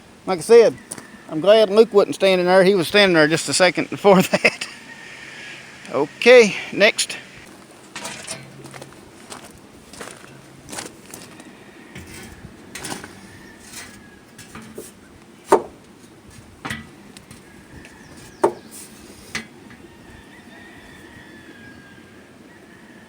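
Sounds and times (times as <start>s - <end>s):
objects knocking and clattering: 8.0s - 9.0s, 12.0s - 15.8s, 16.6s - 17.4s.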